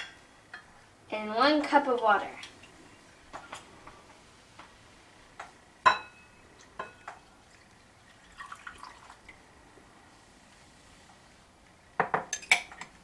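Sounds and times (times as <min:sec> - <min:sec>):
glassware knocks and clinks: 0:05.8 - 0:06.2, 0:12.0 - 0:12.9.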